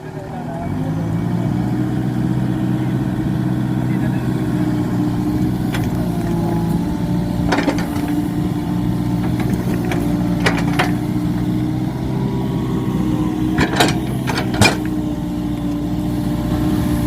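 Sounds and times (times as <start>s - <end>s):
excavator diesel engine running: 0.0s - 17.0s
sharp knocks: 7.4s - 8.3s.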